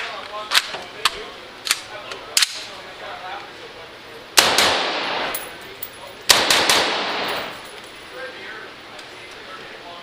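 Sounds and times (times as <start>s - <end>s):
gunshots with echoing tail: 4.4s - 5.4s, 6.3s - 7.6s.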